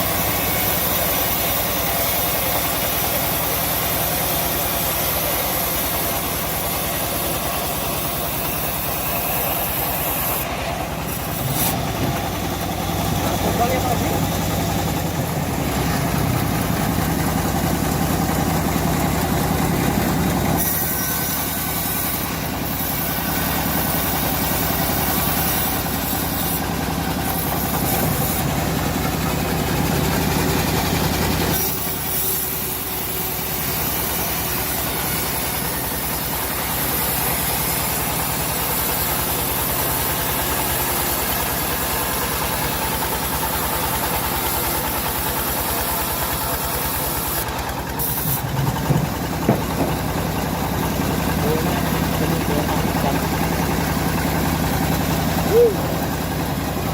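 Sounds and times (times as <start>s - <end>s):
bandsaw mill engine running: 0.0s - 56.9s.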